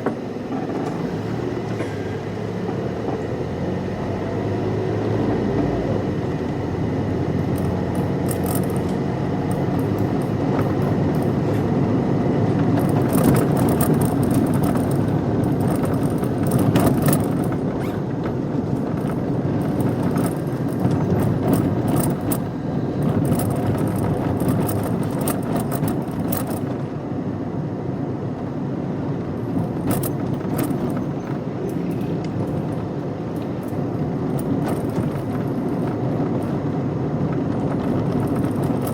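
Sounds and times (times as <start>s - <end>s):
car engine and road noise: 0.0s - 38.9s
light rattles and ticks: 7.4s - 11.7s, 12.6s - 26.9s, 29.5s - 38.9s.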